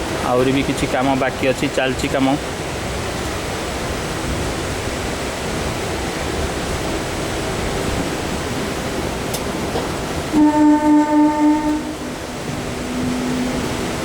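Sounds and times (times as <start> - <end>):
steady rushing noise: 0.0 - 14.0
train horn blasts: 10.3 - 14.0.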